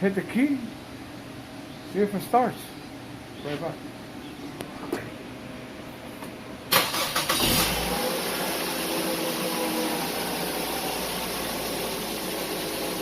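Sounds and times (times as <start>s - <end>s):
car engine idling: 6.8s - 13.0s.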